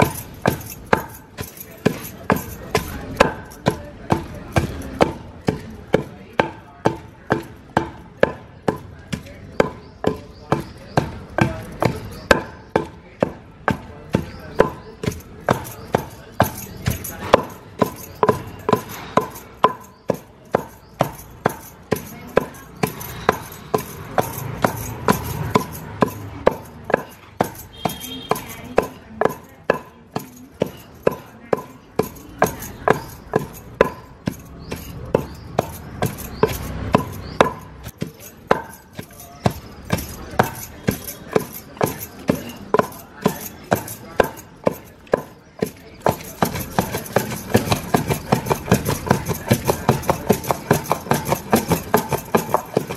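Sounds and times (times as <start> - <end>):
hand tool knocking on food: 0.0 - 52.9.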